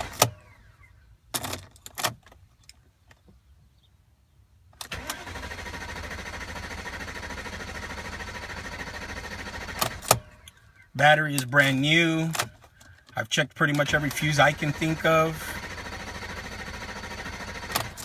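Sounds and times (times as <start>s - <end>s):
car starter cranking: 0.0s - 0.6s, 4.8s - 18.0s.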